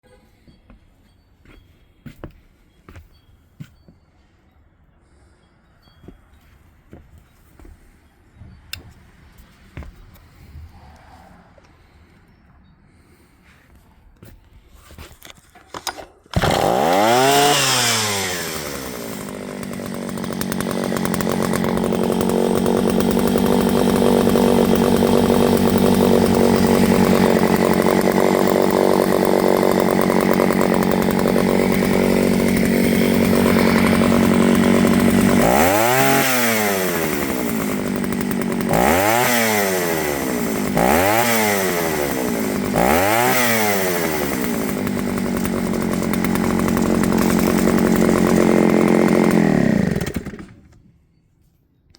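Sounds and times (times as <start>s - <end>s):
chainsaw engine idling and revving: 16.3s - 50.8s.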